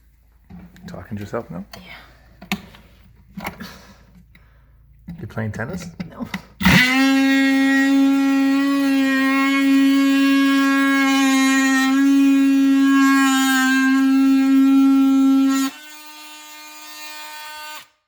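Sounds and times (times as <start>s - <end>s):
oscillating multi-tool buzzing: 6.6s - 18.0s.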